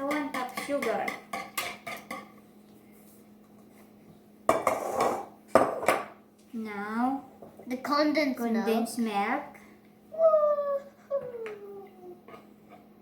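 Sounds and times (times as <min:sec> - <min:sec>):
utensils clattering against a bowl: 0:00.0 - 0:02.4.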